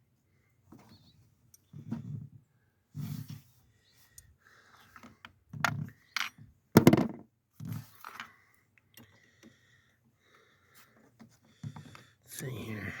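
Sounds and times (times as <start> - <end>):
tools knocking and clinking: 6.2 - 7.2.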